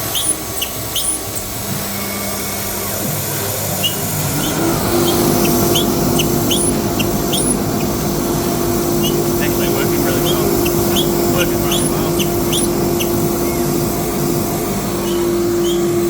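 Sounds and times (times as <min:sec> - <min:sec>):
short high squeaks: 0:00.0 - 0:01.7, 0:03.6 - 0:13.6, 0:14.9 - 0:16.0
dust extractor running: 0:00.0 - 0:16.0
router spindle cutting plywood: 0:00.0 - 0:16.0
steady hum: 0:00.0 - 0:16.0.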